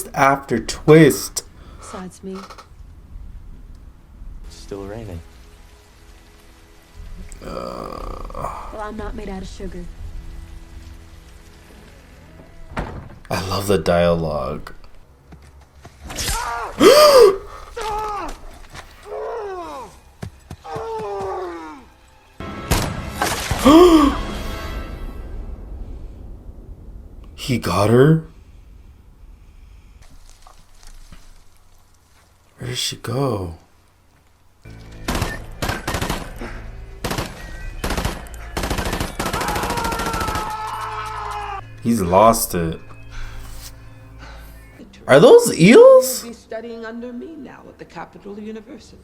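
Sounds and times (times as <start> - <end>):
short cries falling in pitch: 16.6 - 18.3
rapid gunfire: 35.1 - 36.4, 37.0 - 40.5.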